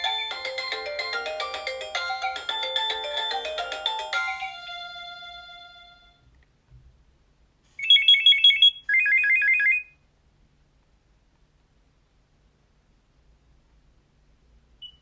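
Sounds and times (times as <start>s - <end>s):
polyphonic phone ringtone: 0.0s - 6.0s.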